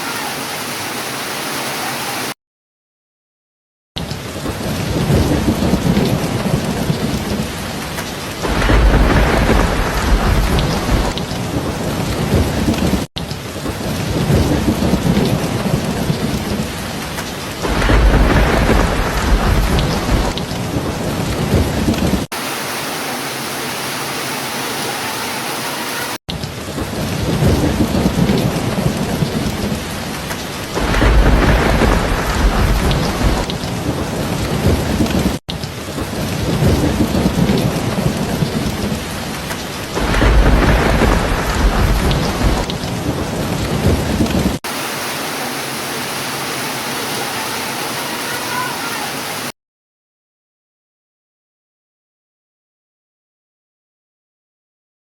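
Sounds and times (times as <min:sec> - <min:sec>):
heavy rain falling: 0:00.0 - 0:02.4, 0:04.0 - 0:49.6
low rolling thunder: 0:04.3 - 0:22.3, 0:26.6 - 0:44.6.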